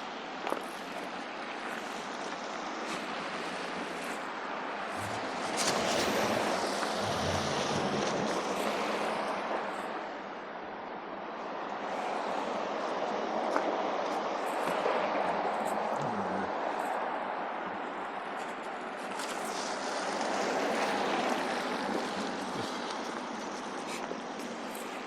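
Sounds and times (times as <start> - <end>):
vehicle tyres on slushy street: 0.0 - 25.0.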